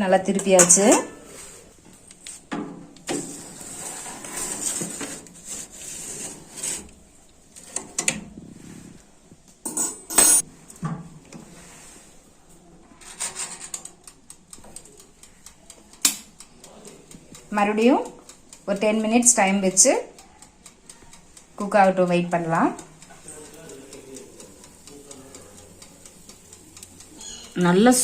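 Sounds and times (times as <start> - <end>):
metal tray scraping on foil: 3.1 - 7.0, 13.0 - 13.9.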